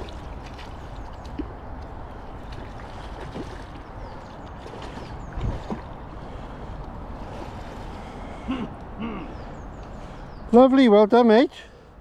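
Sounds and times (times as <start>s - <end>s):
wind rumbling on microphone: 0.0s - 8.5s.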